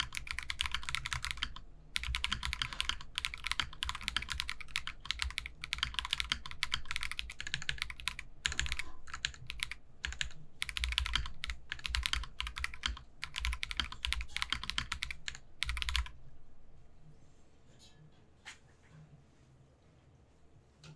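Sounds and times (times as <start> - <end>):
mechanical keyboard typing: 0.0 - 16.2.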